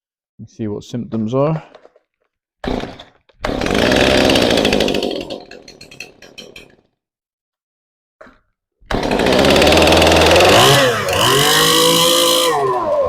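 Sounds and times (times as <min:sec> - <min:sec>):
chainsaw engine sputtering and running: 0:02.7 - 0:05.4, 0:08.9 - 0:13.0.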